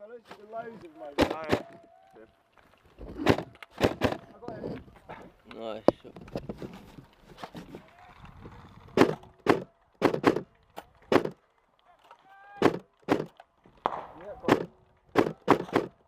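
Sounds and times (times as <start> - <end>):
airsoft rifle shots: 1.2 - 1.8, 3.1 - 4.3, 9.0 - 10.5, 11.1 - 11.4, 12.6 - 16.0.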